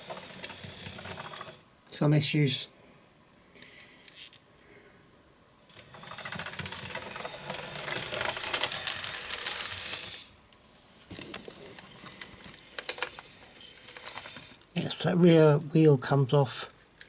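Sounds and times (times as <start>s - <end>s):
model train wheels rattling: 0.0s - 1.6s, 5.7s - 10.4s, 11.1s - 15.6s.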